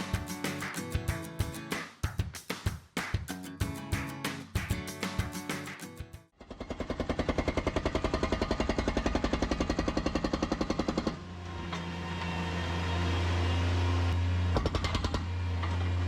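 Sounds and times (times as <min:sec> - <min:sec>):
power breaker hammering concrete: 0:06.4 - 0:11.2.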